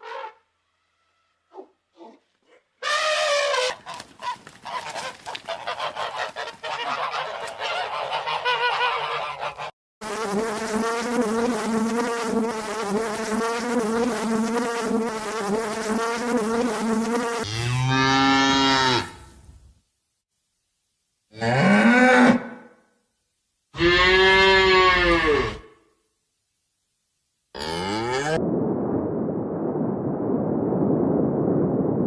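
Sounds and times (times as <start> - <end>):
goose honking: 2.8 - 9.7
wavering insect buzz: 10.0 - 17.5.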